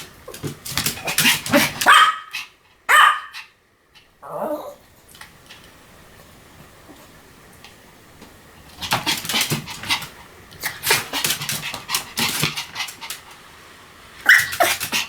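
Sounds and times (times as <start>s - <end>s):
small dog yapping: 0.9s - 3.5s, 14.2s - 15.0s
dog yelp: 1.5s - 2.3s, 2.9s - 3.5s, 14.2s - 15.0s.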